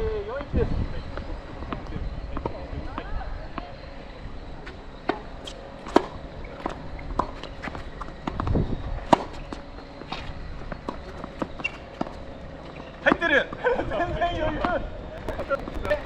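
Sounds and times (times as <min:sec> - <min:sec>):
wind rumble on microphone: 0:00.0 - 0:03.6, 0:07.8 - 0:09.1.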